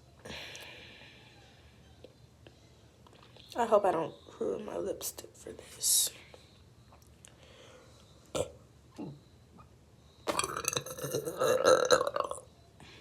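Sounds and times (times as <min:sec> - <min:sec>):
faint throat sounds: 0:08.3 - 0:09.2
woman burping: 0:10.3 - 0:12.4.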